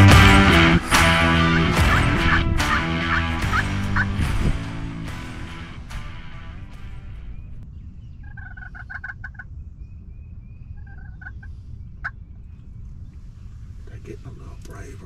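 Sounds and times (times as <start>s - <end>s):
low rumble: 0.0s - 15.0s
turkeys gobbling: 1.4s - 4.2s, 8.2s - 9.5s, 10.8s - 12.2s.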